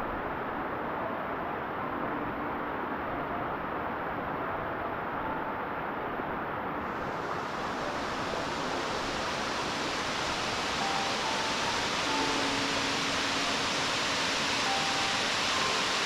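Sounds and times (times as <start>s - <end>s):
waterfall rushing: 6.8s - 16.0s.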